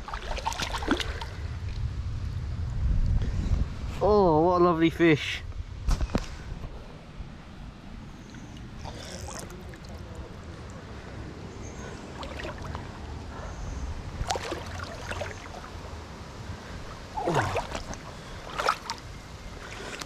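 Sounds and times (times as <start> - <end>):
water splashes: 0.0 - 1.4, 8.2 - 13.5, 14.1 - 20.0
river water sloshing and trickling: 0.0 - 1.8, 6.6 - 20.0.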